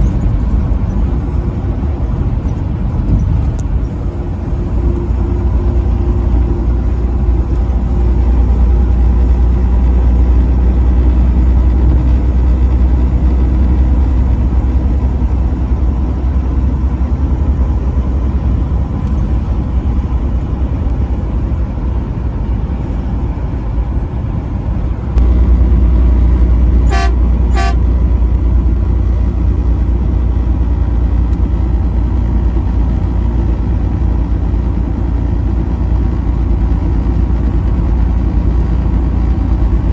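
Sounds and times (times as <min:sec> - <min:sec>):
vehicle rumble on highway: 0:00.0 - 0:39.9
truck horn blasts: 0:26.6 - 0:28.3.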